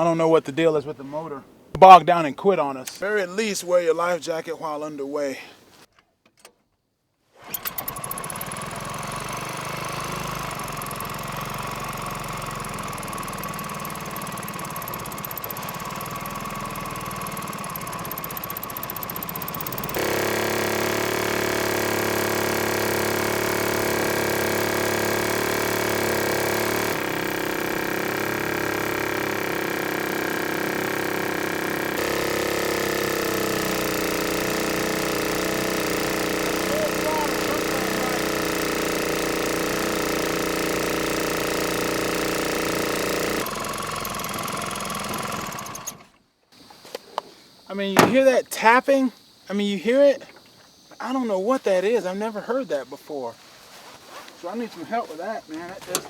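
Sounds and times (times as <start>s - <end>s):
boat motor running: 7.5s - 46.2s, 48.0s - 48.2s
loud engine tapping: 7.6s - 46.0s.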